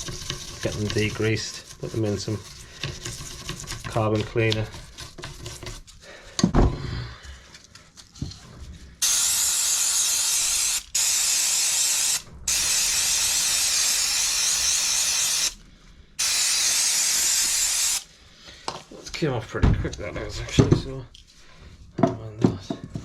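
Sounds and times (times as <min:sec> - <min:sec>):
aerosol spray hissing: 0:09.0 - 0:15.6, 0:16.2 - 0:18.1.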